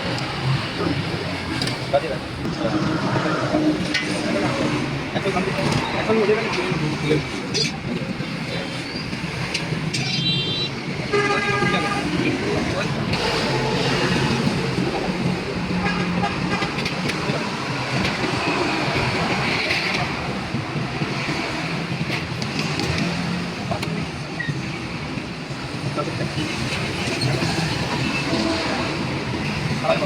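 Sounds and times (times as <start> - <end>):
indistinct voices: 0.0 - 30.0
road traffic passing: 0.0 - 30.0.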